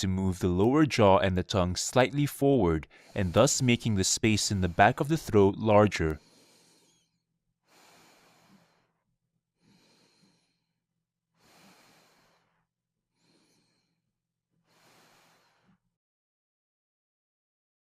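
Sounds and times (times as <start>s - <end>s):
faint slow breathing: 2.8s - 5.4s, 6.1s - 16.0s.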